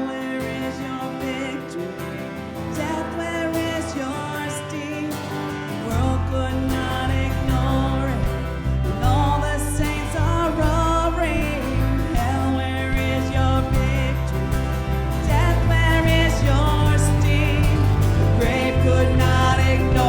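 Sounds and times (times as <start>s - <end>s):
live worship band music: 0.0s - 20.0s
heavy bass line: 5.9s - 20.0s.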